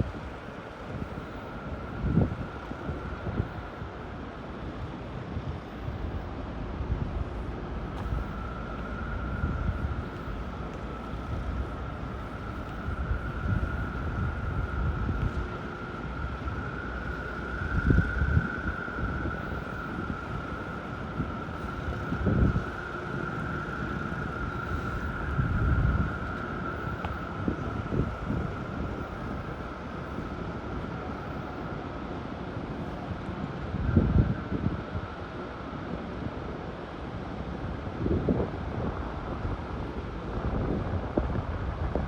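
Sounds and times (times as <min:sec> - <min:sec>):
wind buffeting microphone: 0:00.0 - 0:42.0
steady high-pitched tone: 0:07.1 - 0:36.0.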